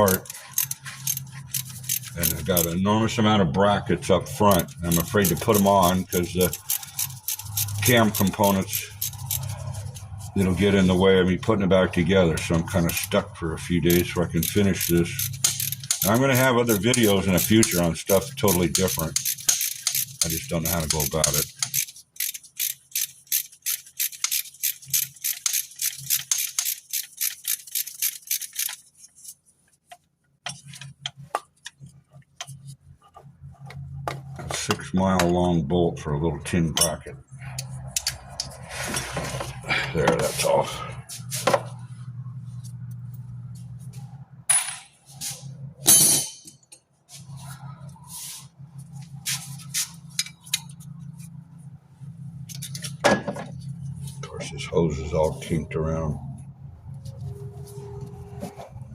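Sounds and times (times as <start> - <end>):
metal tools clinking: 0.0 - 2.8, 4.4 - 10.0, 14.3 - 28.9, 45.9 - 46.8
ratchet wrench clicking: 0.0 - 2.8, 4.4 - 10.1, 12.8 - 13.2, 13.9 - 28.9, 37.6 - 38.6, 52.5 - 53.0
steady low hum: 30.4 - 58.9.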